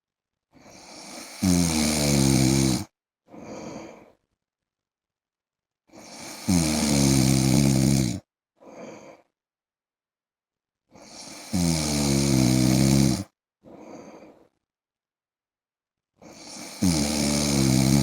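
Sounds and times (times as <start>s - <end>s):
man snoring: 0.7s - 2.9s, 5.9s - 8.3s, 11.0s - 13.3s, 16.2s - 18.0s.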